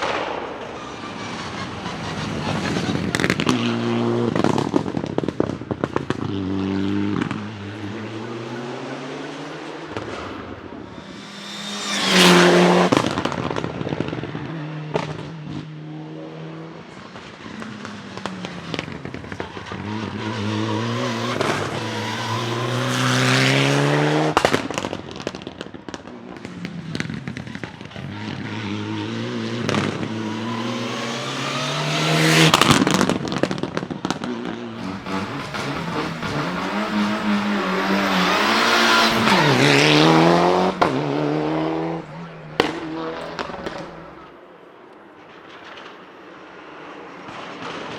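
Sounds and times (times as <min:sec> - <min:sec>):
rally cars accelerating and revving: 0:00.0 - 0:44.5.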